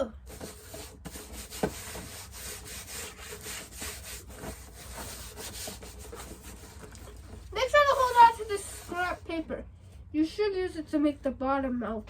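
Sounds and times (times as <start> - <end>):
paper rustling and scraping on cardboard: 0.2 - 9.3.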